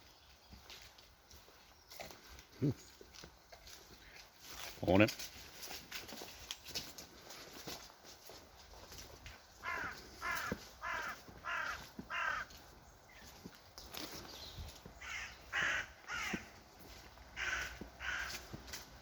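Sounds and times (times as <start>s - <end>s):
crow cawing: 9.6s - 12.7s, 15.0s - 16.6s, 17.3s - 18.6s.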